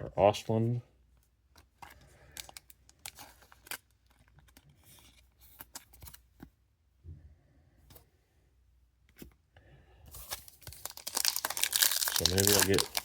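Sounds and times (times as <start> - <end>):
trading cards rustling: 1.5 - 6.5, 10.1 - 13.0
pack wrappers crinkling: 10.2 - 13.0.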